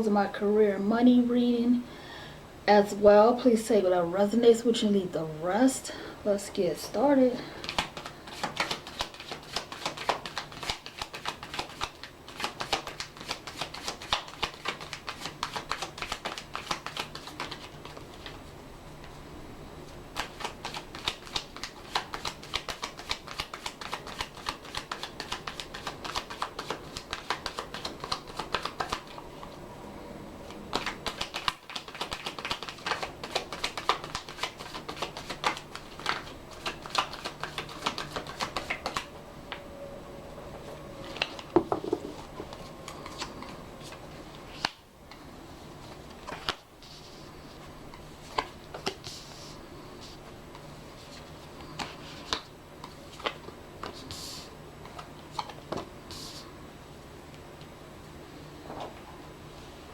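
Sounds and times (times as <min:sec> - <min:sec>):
cards being shuffled: 0:07.6 - 0:18.4, 0:20.2 - 0:29.5, 0:30.7 - 0:39.1, 0:41.0 - 0:44.8, 0:45.8 - 0:47.6, 0:48.2 - 0:56.4.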